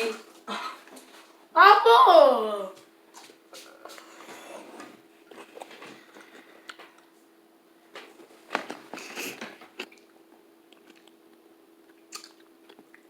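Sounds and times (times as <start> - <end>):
cucumber crunching being chewed: 9.1 - 13.0.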